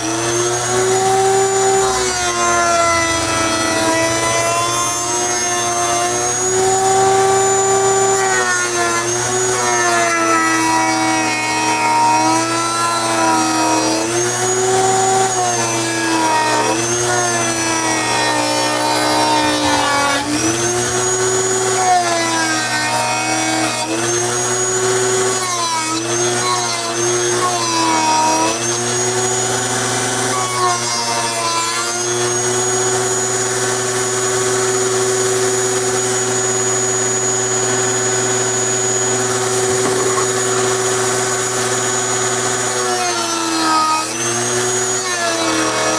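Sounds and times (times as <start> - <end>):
rotary tool grinding plastic: 14.0 - 23.0, 36.4 - 45.9.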